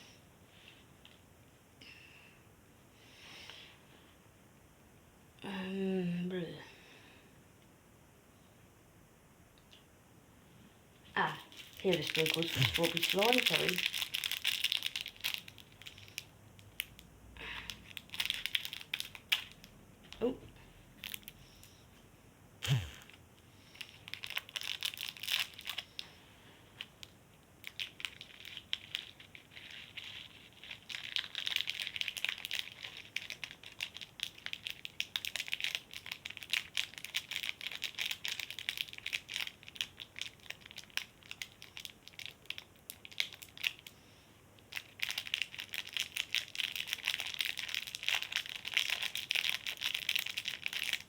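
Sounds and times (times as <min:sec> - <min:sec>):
slime crackling and popping: 0:11.6 - 0:19.7, 0:23.8 - 0:26.0, 0:27.6 - 0:43.8, 0:44.6 - 0:51.0.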